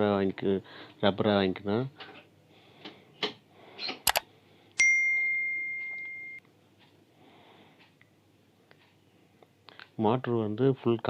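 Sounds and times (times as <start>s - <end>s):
sharp clicks: 4.0s - 4.2s
metallic bell ding: 4.8s - 6.4s.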